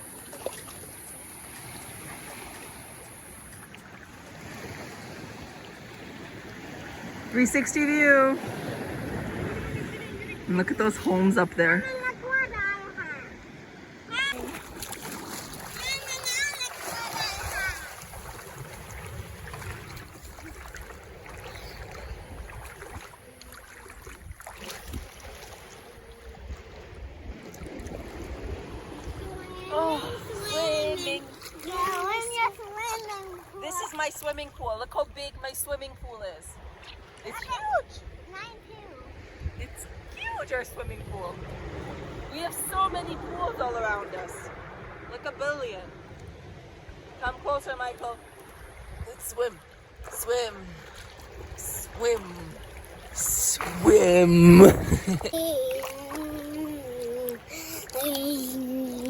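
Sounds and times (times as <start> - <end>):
sea water washing gently: 0.0 - 59.0
wind buffeting microphone: 5.0 - 12.9, 26.2 - 32.2, 54.1 - 55.4.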